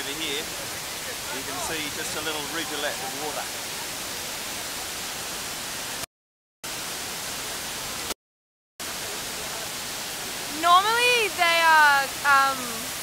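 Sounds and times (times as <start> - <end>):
waterfall rushing: 0.0 - 6.0, 8.8 - 13.0.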